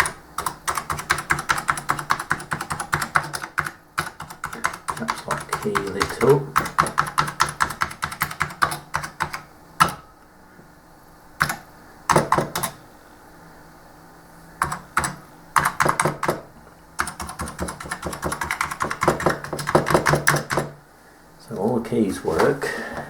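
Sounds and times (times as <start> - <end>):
keyboard key clicks: 14.6 - 16.4.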